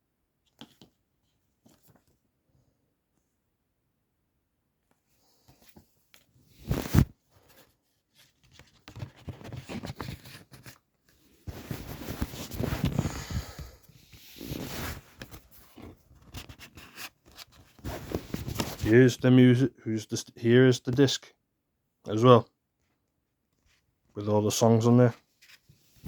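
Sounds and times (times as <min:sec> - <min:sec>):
rustling of booklet and plastic case: 0:00.4 - 0:02.4, 0:04.9 - 0:19.2, 0:22.8 - 0:26.0.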